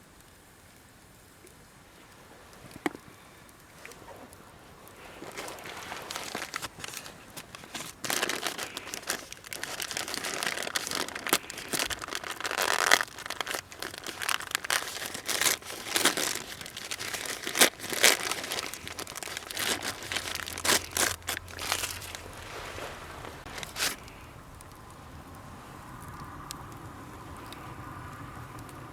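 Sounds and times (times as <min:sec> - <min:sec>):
crinkly material crumpling: 0:02.0 - 0:24.7.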